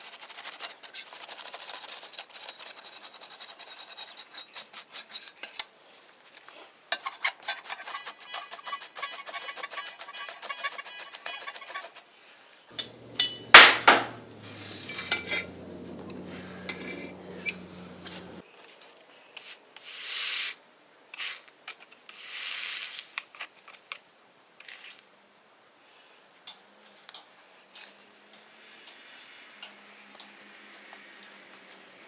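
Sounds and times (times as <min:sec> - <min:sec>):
metal clinking and rubbing: 0:06.9 - 0:12.0, 0:12.8 - 0:19.0
sharp metallic clank: 0:12.8 - 0:15.6
short hissing scrapes: 0:14.4 - 0:15.5, 0:19.4 - 0:20.6, 0:22.1 - 0:23.2.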